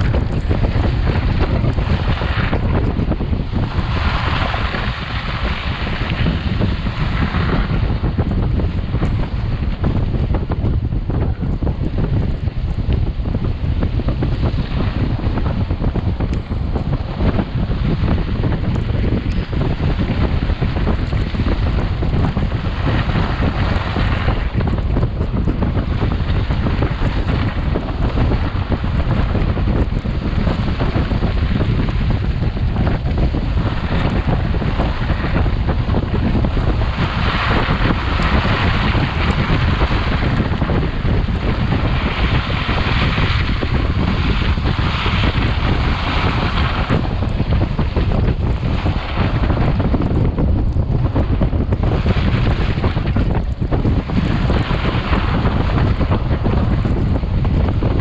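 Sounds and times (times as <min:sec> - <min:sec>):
tyres rumbling on snowy trail: 0:00.0 - 0:58.0
wind buffeting microphone: 0:00.0 - 0:58.0.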